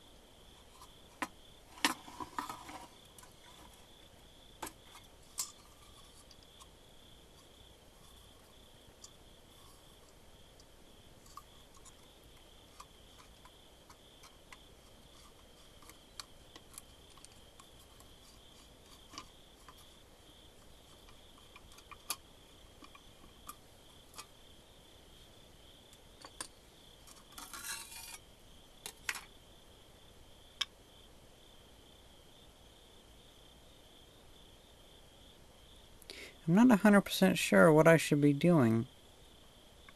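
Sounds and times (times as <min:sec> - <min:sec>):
small clicks handling parts: 0:15.2 - 0:19.9, 0:28.8 - 0:29.3.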